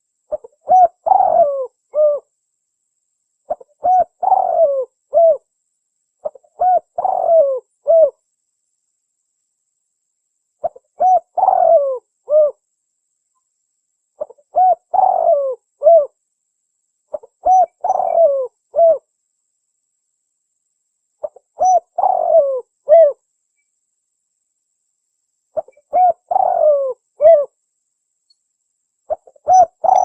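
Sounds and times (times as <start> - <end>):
dove cooing: 0.3 - 2.3, 3.5 - 5.4, 6.2 - 8.2, 10.6 - 12.6, 14.2 - 16.2, 17.1 - 19.1, 21.2 - 23.2, 25.6 - 27.6, 29.1 - 30.0.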